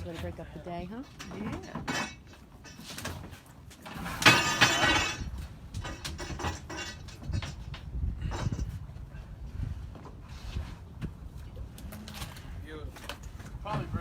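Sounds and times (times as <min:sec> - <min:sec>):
light knocks and clinks: 0:04.2 - 0:08.8.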